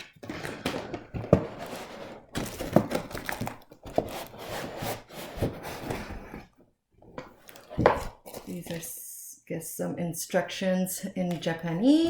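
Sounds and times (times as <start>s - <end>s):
cardboard and paper rustling: 0.0s - 6.5s.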